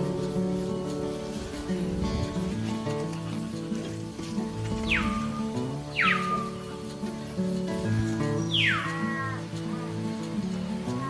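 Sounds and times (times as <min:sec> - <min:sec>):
soft piano music: 0:00.0 - 0:11.0
falling animal call: 0:04.7 - 0:07.0, 0:07.8 - 0:11.0.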